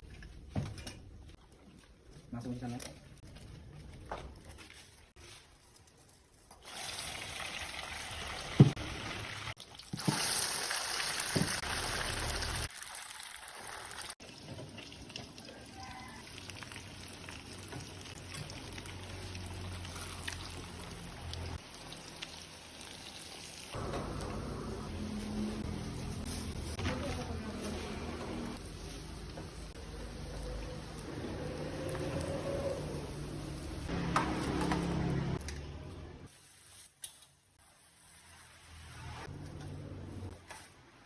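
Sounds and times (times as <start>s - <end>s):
skewers frying in hot oil: 6.5s - 26.8s.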